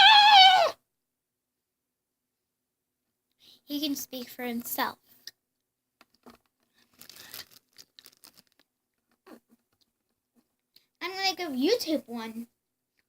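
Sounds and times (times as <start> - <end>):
faint rustling and crinkling: 6.0 - 11.0.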